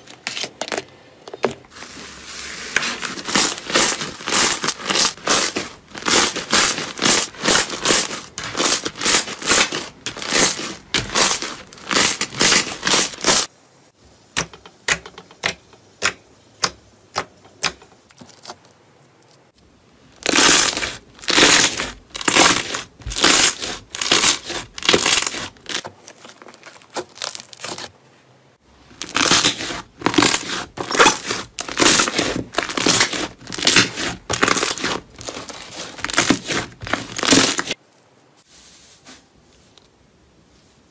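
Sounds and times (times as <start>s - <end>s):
crunchy slime being squeezed: 2.8s - 13.5s, 20.2s - 27.9s, 29.0s - 37.8s.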